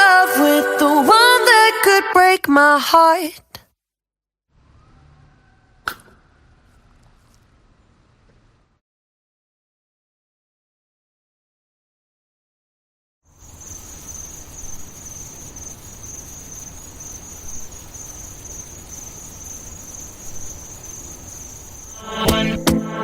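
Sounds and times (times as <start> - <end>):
dance-pop music with beat: 0.0 - 2.4
insects chirring: 13.3 - 22.5
low background hiss: 13.4 - 22.0.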